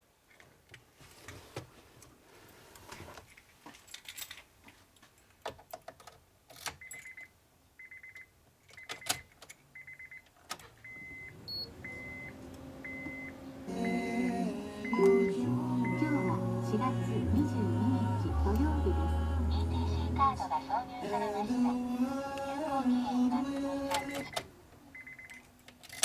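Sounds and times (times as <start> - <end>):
keys rattling and clicking: 3.7 - 4.5
high-pitched car warning beeps: 9.8 - 21.7, 22.8 - 25.5.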